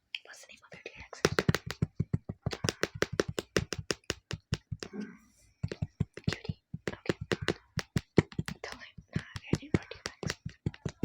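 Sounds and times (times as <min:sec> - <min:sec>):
asmr clicks and taps: 0:00.2 - 0:05.0, 0:05.6 - 0:11.0
soft vocal sound: 0:04.8 - 0:07.8.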